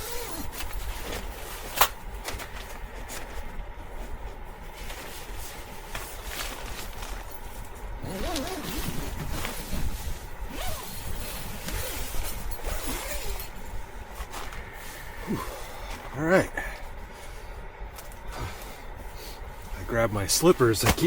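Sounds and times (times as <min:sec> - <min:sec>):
tent zipper: 0:00.0 - 0:01.9, 0:08.0 - 0:13.6
nylon fabric rustling: 0:00.0 - 0:16.1.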